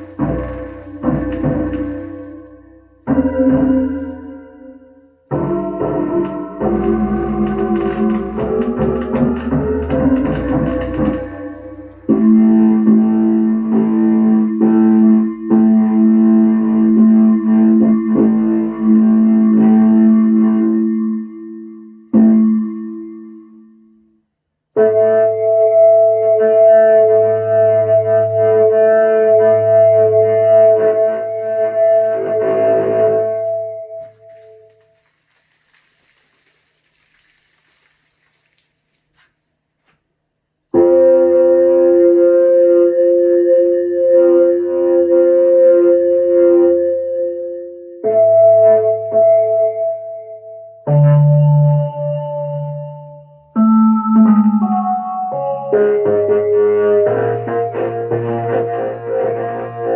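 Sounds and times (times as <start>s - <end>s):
faint hiss: 34.3s - 39.4s.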